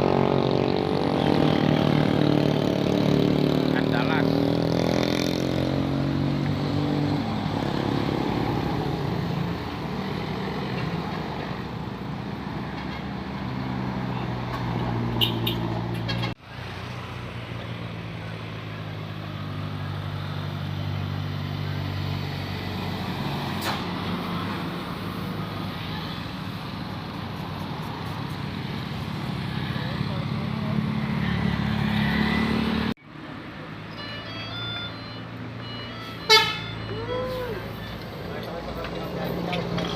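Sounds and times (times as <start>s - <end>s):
bus engine running: 15.9s - 39.9s.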